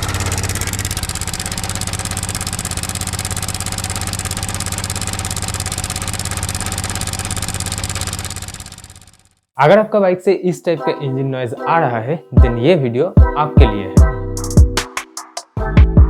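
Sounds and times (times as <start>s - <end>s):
loose timing chain rattling: 0.0s - 9.3s
motorcycle engine running: 0.0s - 9.5s.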